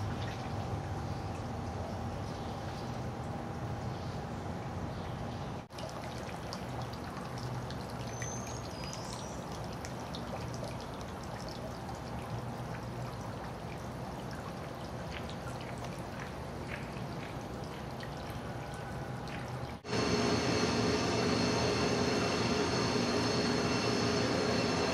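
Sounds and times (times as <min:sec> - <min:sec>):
water pouring and splashing: 0:00.0 - 0:01.6, 0:05.7 - 0:19.9.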